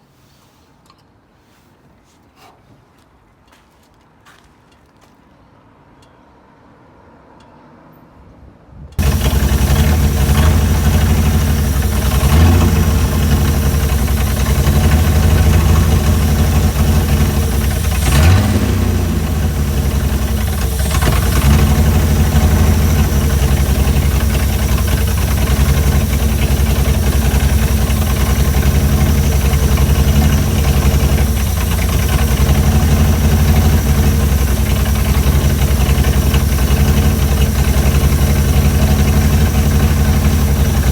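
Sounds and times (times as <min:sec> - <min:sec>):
car engine idling: 0:09.0 - 0:40.9.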